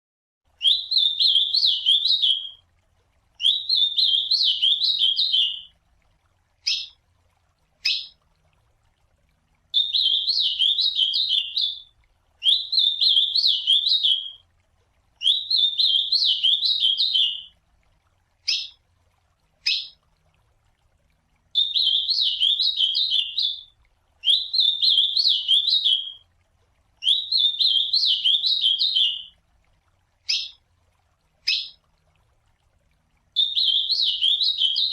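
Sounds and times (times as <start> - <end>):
bird singing warbled song: 0.6 - 2.6, 3.4 - 5.7, 6.6 - 7.0, 7.8 - 8.2, 9.8 - 14.4, 15.2 - 17.5, 18.4 - 18.8, 19.6 - 20.0, 21.6 - 26.2, 27.0 - 29.4, 30.2 - 30.6, 31.4 - 31.8, 33.4 - 34.9.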